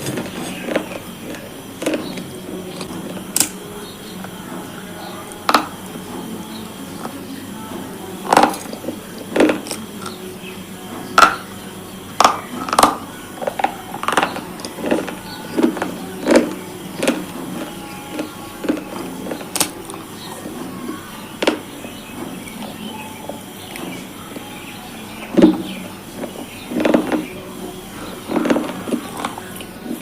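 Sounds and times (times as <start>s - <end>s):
crunching of brittle food: 0.0s - 3.7s.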